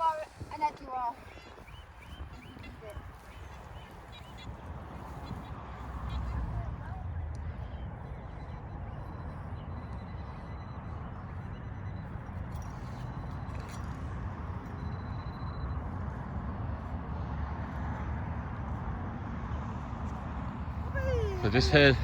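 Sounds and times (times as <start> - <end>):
low outdoor rumble: 0.0 - 12.4, 19.7 - 22.0.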